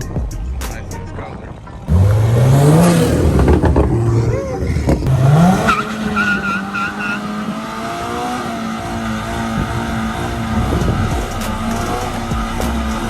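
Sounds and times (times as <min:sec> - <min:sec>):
music: 0:00.0 - 0:02.8, 0:10.4 - 0:13.0
car engine revving: 0:01.9 - 0:13.0.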